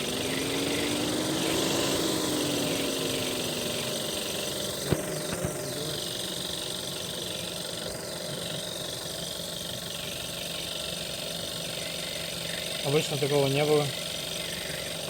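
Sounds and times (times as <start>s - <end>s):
petrol engine idling: 0.0s - 15.0s.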